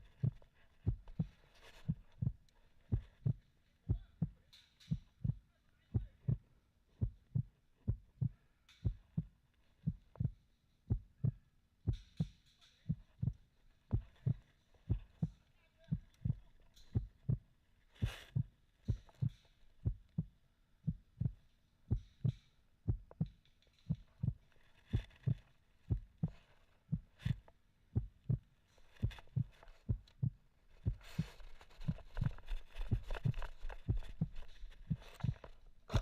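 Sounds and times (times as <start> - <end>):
low muffled thumps: 18.2 - 27.2, 28.0 - 31.3, 31.9 - 36.0
brief rustling: 30.7 - 36.0.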